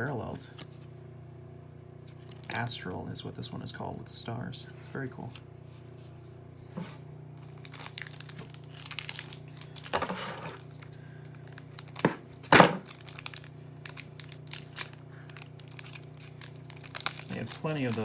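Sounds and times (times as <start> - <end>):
foil wrapper crinkling and tearing: 2.2 - 2.5, 7.4 - 18.0.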